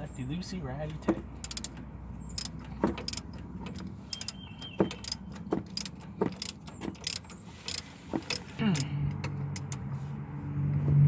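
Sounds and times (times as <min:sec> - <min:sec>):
ratchet wrench clicking: 0:01.4 - 0:01.8, 0:02.4 - 0:04.4, 0:05.0 - 0:09.8.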